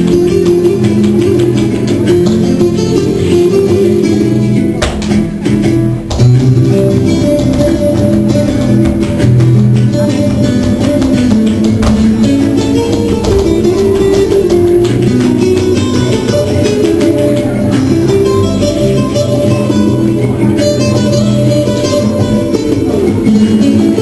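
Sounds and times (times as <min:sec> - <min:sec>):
flamenco acoustic guitar music: 0:00.0 - 0:24.0.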